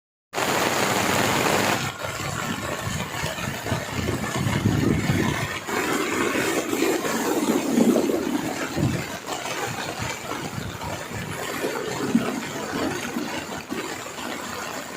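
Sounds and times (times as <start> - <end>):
rain and wet-road spray hiss: 0.4 - 4.7.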